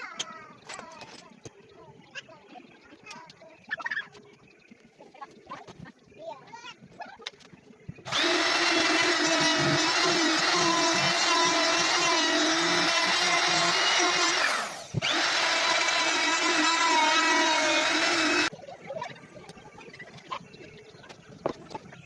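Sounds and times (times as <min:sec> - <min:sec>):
power drill running: 0:08.1 - 0:18.5.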